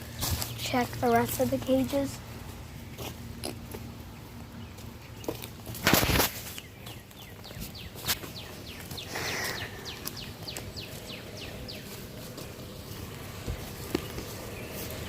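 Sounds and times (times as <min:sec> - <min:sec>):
brief rustle: 0:05.8 - 0:06.7.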